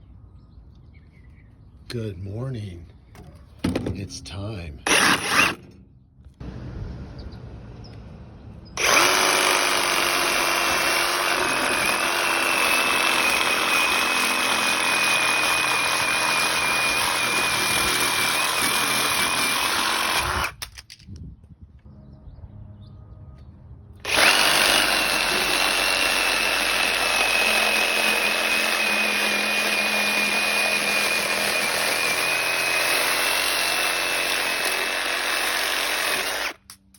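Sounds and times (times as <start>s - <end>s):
reciprocating saw cutting metal: 4.8s - 5.8s, 8.8s - 20.6s, 24.0s - 36.9s.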